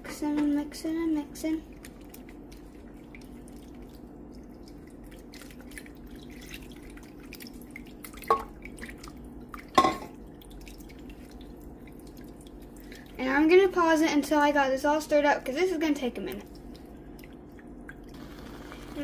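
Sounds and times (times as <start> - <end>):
gravy being stirred in a pan: 0.1 - 17.8
small wet plops: 1.7 - 13.2, 16.2 - 18.2.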